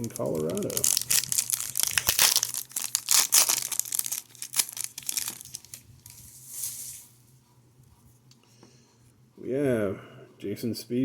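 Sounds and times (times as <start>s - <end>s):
plastic wrapper crinkling: 0.0s - 7.0s.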